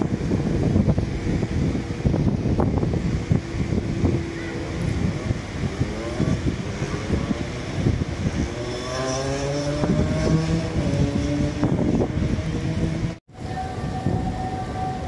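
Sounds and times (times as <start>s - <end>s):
street noise: 0.0s - 15.0s.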